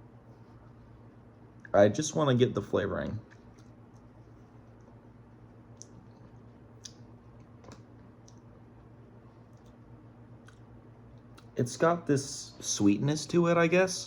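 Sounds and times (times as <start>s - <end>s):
low steady hum: 0.0s - 14.0s
mouth clicks and smacks: 5.6s - 8.6s, 9.5s - 11.6s.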